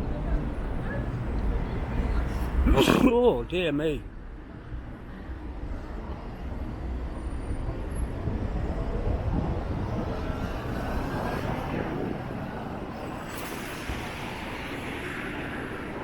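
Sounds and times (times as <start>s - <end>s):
street traffic: 0.0s - 16.0s
gusty wind buffeting microphone: 4.7s - 16.0s.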